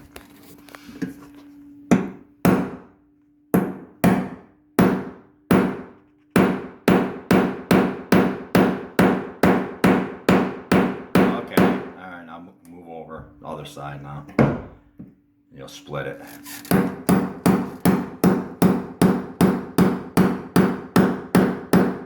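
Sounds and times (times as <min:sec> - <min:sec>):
hammer striking chisel in wood: 0:01.9 - 0:02.9, 0:03.6 - 0:11.9, 0:16.5 - 0:22.0.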